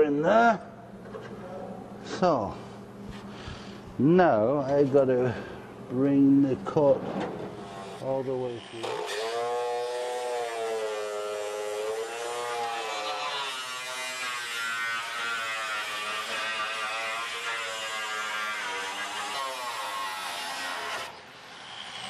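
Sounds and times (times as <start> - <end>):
power tool cutting sheet steel: 7.6 - 22.0.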